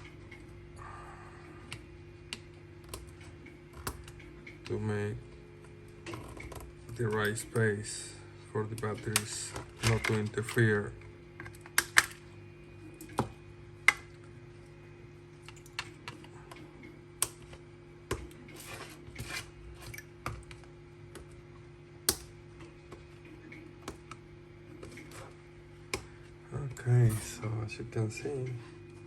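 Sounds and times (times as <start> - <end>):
cutters snapping plastic: 8.7 - 10.7.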